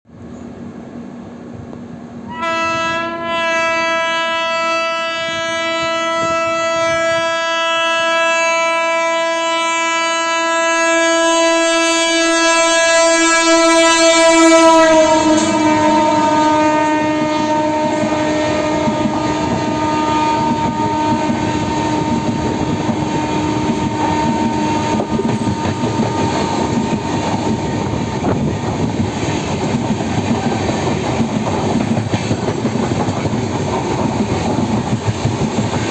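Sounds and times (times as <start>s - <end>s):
locomotive horn blast: 2.3s - 27.8s
train wheels clattering over rail joints: 20.5s - 35.9s.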